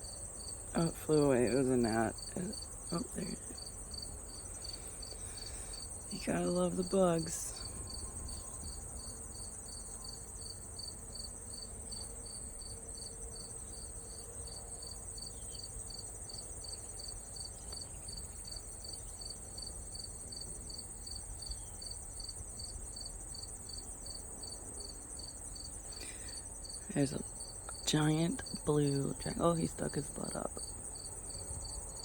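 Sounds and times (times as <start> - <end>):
insect chirping rhythmically: 0.0 - 32.0.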